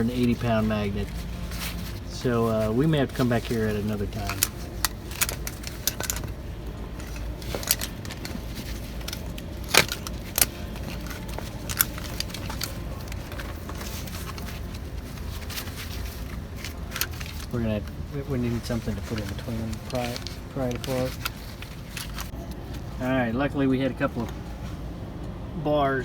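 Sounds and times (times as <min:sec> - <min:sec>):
steady low rumble: 0:00.0 - 0:26.0
magnets clicking and clinking: 0:03.6 - 0:18.0.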